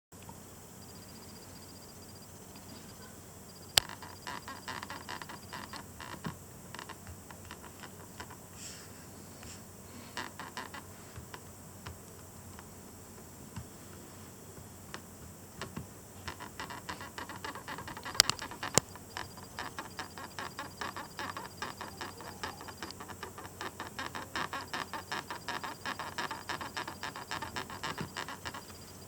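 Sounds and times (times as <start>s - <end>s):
touchpad creaking: 2.5s - 8.5s, 9.4s - 14.0s, 14.9s - 29.0s
touchpad clicking: 16.7s - 23.2s.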